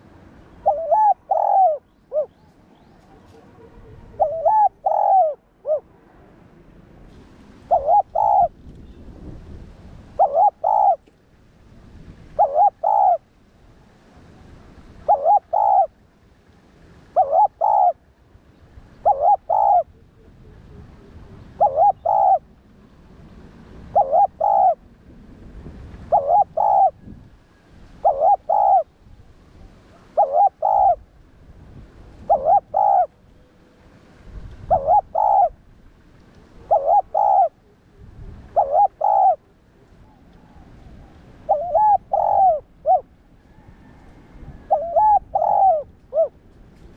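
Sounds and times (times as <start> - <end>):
dove cooing: 0.0 - 2.4, 3.0 - 5.9, 7.7 - 8.5, 10.2 - 11.1, 12.4 - 13.2, 15.0 - 15.9, 17.2 - 18.0, 19.0 - 22.5, 23.9 - 24.8, 26.1 - 28.9, 29.9 - 31.0, 32.2 - 33.2, 34.6 - 35.6, 36.6 - 46.4.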